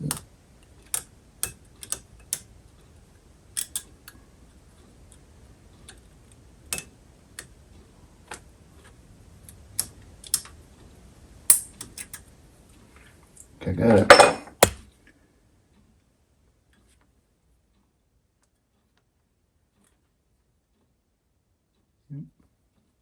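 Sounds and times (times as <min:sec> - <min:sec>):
small sharp metal clicks: 0:00.0 - 0:02.5, 0:03.5 - 0:04.2, 0:05.1 - 0:07.6, 0:09.4 - 0:10.6, 0:11.5 - 0:12.3.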